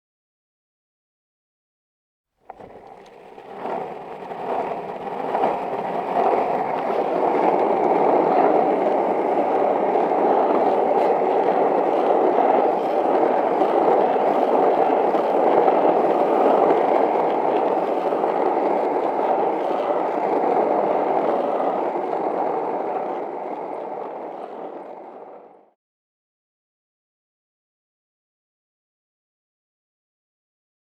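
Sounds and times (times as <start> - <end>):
skateboard wheels rolling on pavement: 2.4 - 25.8.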